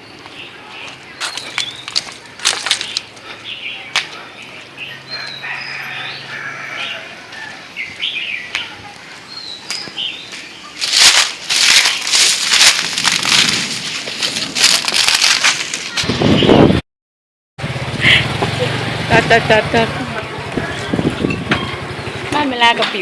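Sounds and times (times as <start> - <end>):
birds chirping: 0.0 - 14.6, 19.1 - 23.0
loud irregular rustling: 1.3 - 3.1, 10.8 - 16.3.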